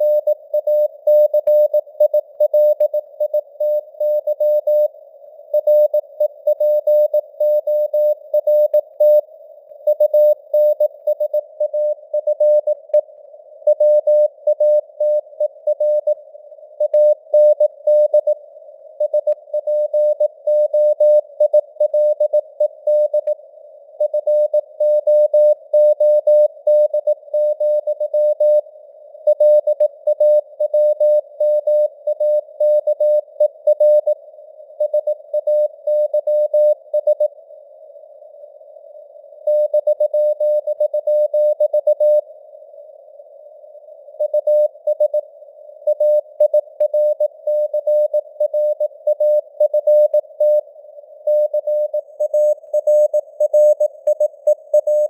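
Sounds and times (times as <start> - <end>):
faint radio hiss: 4.7 - 12.2, 12.8 - 13.6, 18.4 - 19.0, 36.6 - 41.3, 42.1 - 49.6, 50.2 - 55.0.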